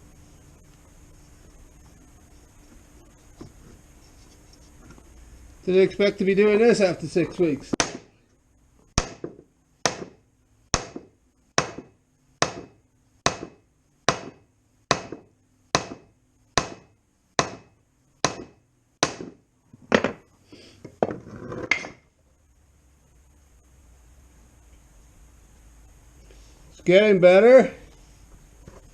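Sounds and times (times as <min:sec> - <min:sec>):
hammer striking wood block: 0:07.7 - 0:08.1, 0:09.0 - 0:19.4.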